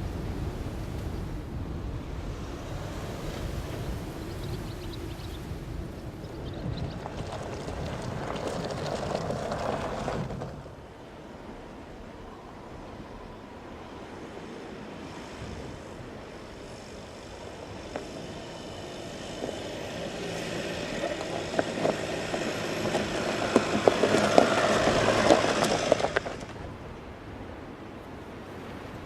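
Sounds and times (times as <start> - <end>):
tyres crunching over stones: 6.0 - 10.8, 17.9 - 26.6
car driving past: 14.3 - 26.6.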